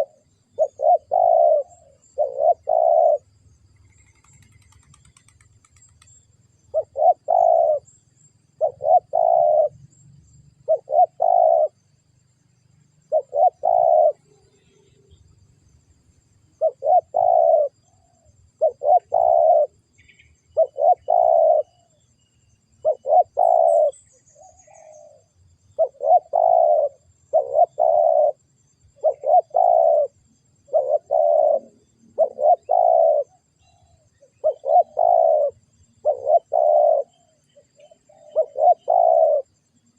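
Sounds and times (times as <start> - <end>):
dove cooing: 0.0 - 3.3, 6.7 - 7.9, 8.6 - 9.8, 10.6 - 11.8, 13.1 - 14.8, 16.6 - 22.0, 22.8 - 28.4, 29.0 - 39.6.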